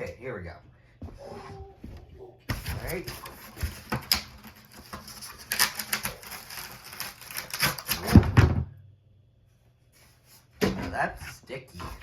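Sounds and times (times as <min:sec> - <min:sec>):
packaging crinkling and scratching: 0:02.5 - 0:08.2.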